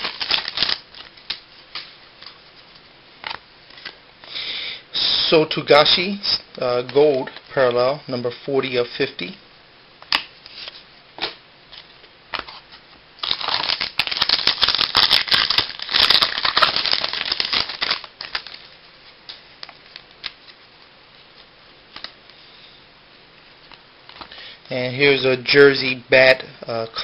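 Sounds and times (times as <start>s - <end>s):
packaging rustling and crinkling: 0.0s - 4.0s, 11.7s - 20.6s.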